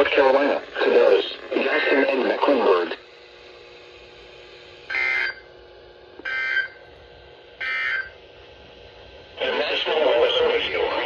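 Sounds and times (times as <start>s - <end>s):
faint steady hum: 0.0s - 11.0s
digital data buzzing bursts: 4.9s - 5.4s, 6.3s - 6.8s, 7.6s - 8.1s.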